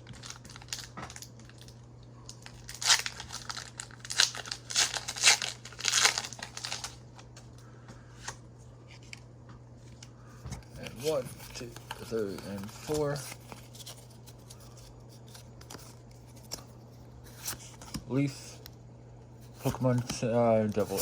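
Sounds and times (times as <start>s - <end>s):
foil wrapper tearing and crinkling: 0.0s - 7.0s
low steady hum: 0.0s - 21.0s.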